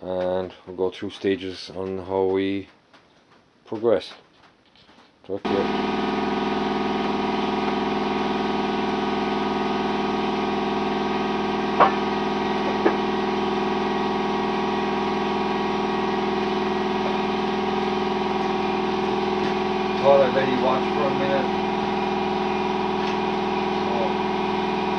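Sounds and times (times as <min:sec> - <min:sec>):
engine running steadily: 0:05.5 - 0:24.9.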